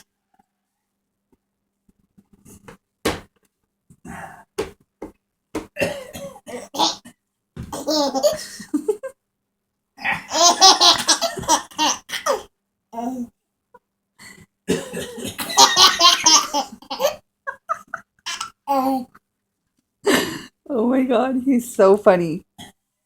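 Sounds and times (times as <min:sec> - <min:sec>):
adult fake coughs: 0:05.8 - 0:06.7, 0:14.7 - 0:15.6
baby laughing: 0:07.7 - 0:08.6, 0:10.3 - 0:13.1, 0:15.4 - 0:19.1.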